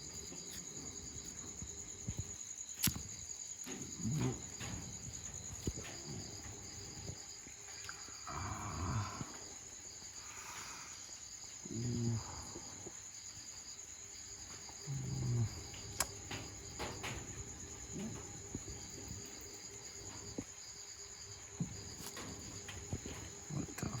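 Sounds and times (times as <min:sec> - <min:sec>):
crickets trilling: 0:00.0 - 0:24.0.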